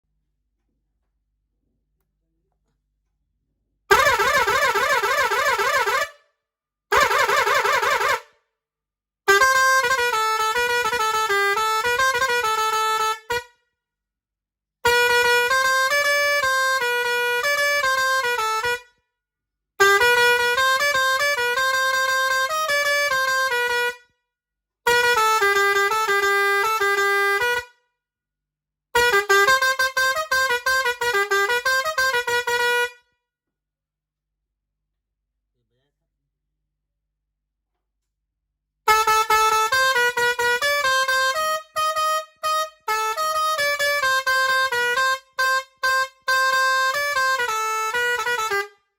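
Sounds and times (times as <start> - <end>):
musical air horn playing tunes: 3.9 - 6.2, 6.9 - 8.3, 9.3 - 13.6, 14.8 - 18.9, 19.8 - 24.1, 24.9 - 27.8, 29.0 - 33.1, 38.9 - 48.9.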